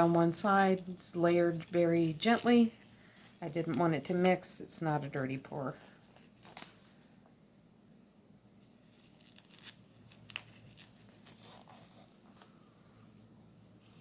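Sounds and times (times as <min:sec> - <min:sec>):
faint steady hum: 0:00.0 - 0:14.0
soft handling rustles: 0:05.7 - 0:14.0.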